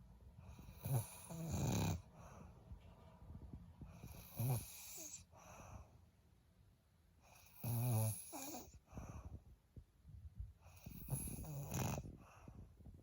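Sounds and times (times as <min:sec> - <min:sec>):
person snoring: 0:00.7 - 0:02.0, 0:10.9 - 0:12.1.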